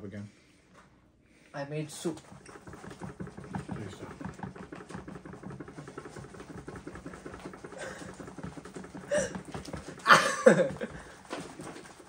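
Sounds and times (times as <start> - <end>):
spoon stirring mashed jello: 2.0 - 10.1.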